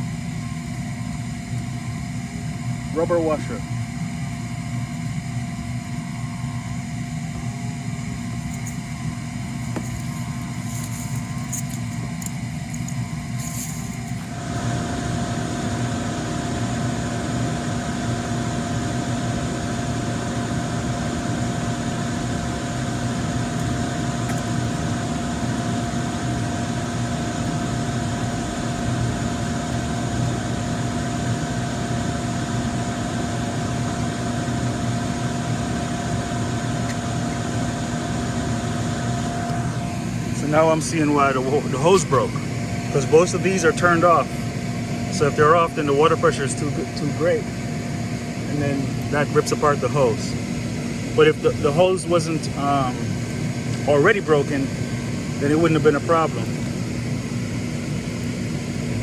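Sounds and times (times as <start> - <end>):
electric blower motor hum: 0.0 - 59.0
loud steady hiss: 14.3 - 56.4.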